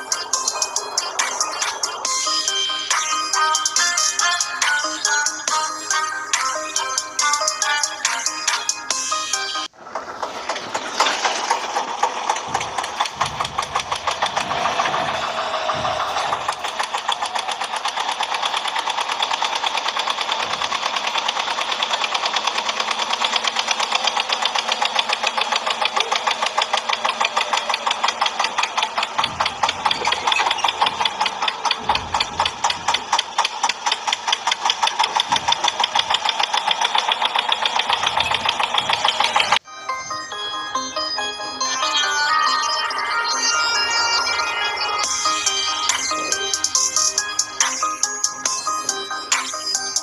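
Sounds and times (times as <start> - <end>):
toy tractor engine chugging: 0.0 - 50.0.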